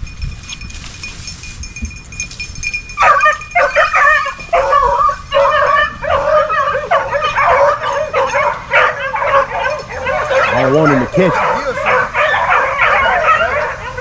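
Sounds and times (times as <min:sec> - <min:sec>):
puppy yipping and baying: 0:03.0 - 0:14.0.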